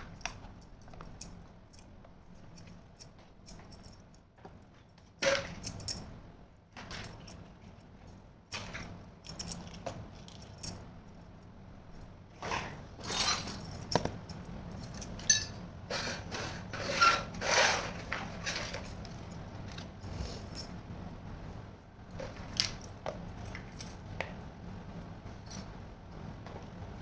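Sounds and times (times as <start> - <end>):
toy pieces rubbing and scraping: 15.9 - 18.8.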